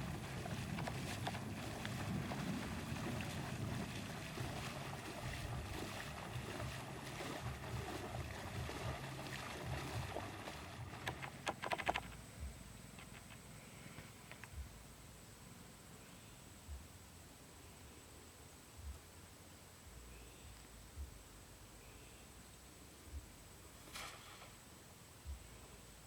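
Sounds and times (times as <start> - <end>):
wind buffeting microphone: 0.0 - 11.2
sharp clicks or rattles: 11.0 - 12.2, 13.0 - 13.5.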